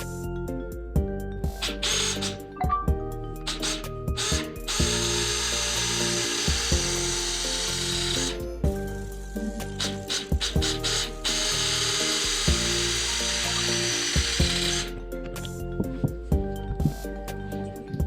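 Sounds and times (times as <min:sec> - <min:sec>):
background music: 0:00.0 - 0:18.0
power tool running: 0:01.6 - 0:02.6, 0:03.4 - 0:08.5, 0:09.6 - 0:14.9.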